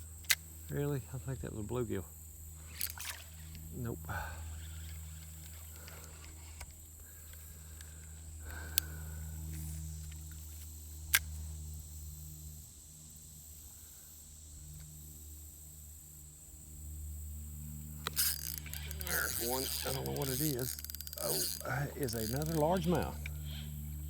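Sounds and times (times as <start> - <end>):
steady low hum: 0.0 - 24.0
sharp clicks: 18.0 - 23.4.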